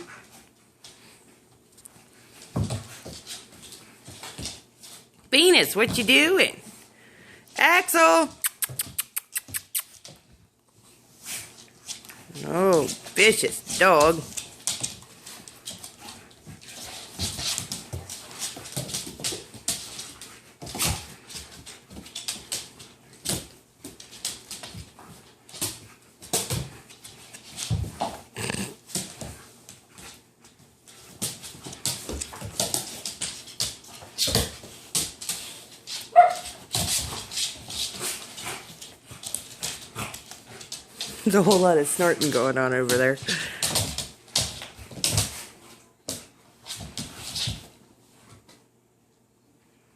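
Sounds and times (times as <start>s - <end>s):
puppies snorting and scuffling: 8.3s - 47.8s.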